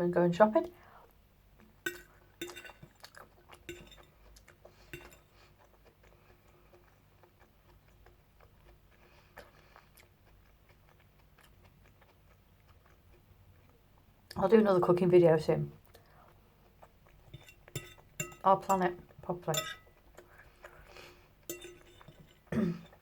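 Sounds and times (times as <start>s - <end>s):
cutlery clinking on a plate: 1.9s - 4.1s, 4.9s - 5.3s, 17.3s - 18.8s, 19.5s - 20.0s, 21.5s - 23.0s.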